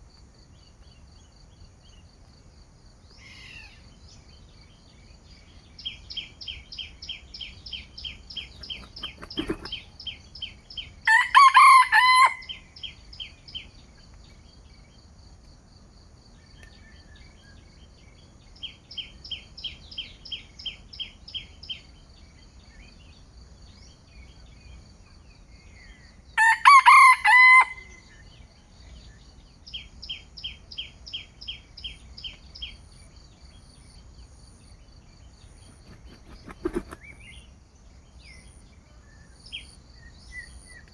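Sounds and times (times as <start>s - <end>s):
bird chirping: 3.3s - 10.9s, 34.9s - 40.9s
rooster crowing: 11.1s - 12.6s, 26.4s - 28.0s.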